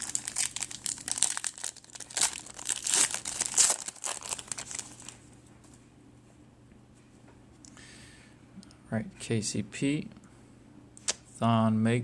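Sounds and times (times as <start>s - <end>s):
foil wrapper crinkling: 0.0s - 5.2s.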